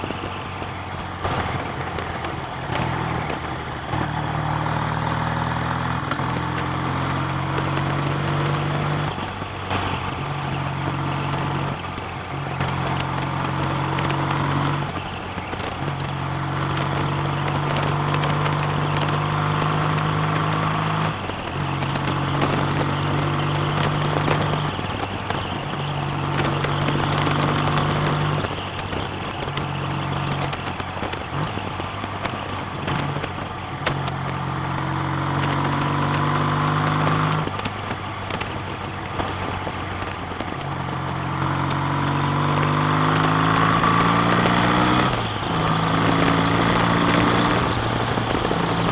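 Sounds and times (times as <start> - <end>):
motorcycle engine running: 0.0 - 48.9.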